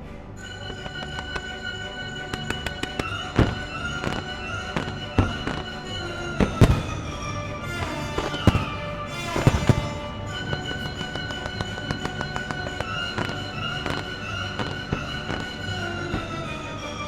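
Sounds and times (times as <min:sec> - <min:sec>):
music: 0:00.0 - 0:17.0
firework shells bursting: 0:06.6 - 0:10.8.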